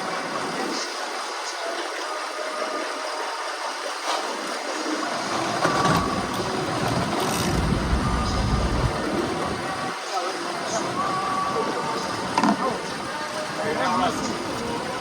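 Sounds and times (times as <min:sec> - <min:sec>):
boat engine running: 0:05.2 - 0:09.9
low rumble: 0:06.9 - 0:09.7.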